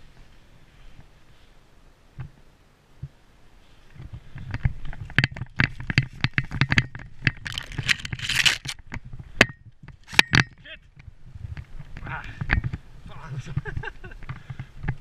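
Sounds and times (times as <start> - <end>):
rustling noise: 0.0 - 2.4, 3.0 - 10.2
scraping and crackling: 4.0 - 9.1.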